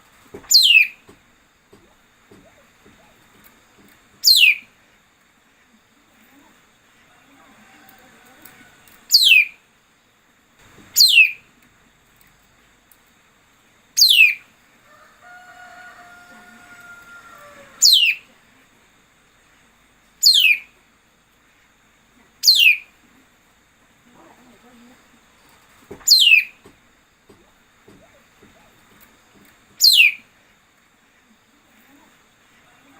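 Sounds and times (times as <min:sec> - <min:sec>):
fainter steady bird call: 0:00.4 - 0:01.1, 0:04.2 - 0:04.9, 0:06.1 - 0:09.7, 0:10.9 - 0:11.5, 0:14.0 - 0:18.7, 0:20.2 - 0:20.8, 0:22.2 - 0:23.2, 0:25.9 - 0:26.7, 0:29.7 - 0:30.4
songbird whistled notes: 0:00.5 - 0:01.0, 0:04.2 - 0:04.6, 0:11.0 - 0:11.4, 0:14.0 - 0:14.4, 0:20.2 - 0:20.7, 0:22.4 - 0:22.8, 0:26.1 - 0:26.6, 0:29.8 - 0:30.2.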